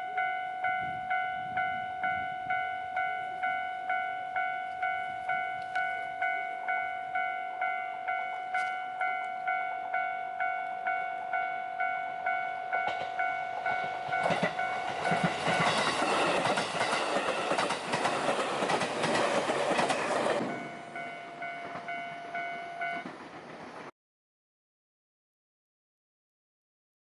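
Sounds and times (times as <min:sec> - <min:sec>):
electronic level crossing bell: 0:00.0 - 0:16.0, 0:20.5 - 0:23.1
train wheels clattering on rails: 0:12.3 - 0:23.9.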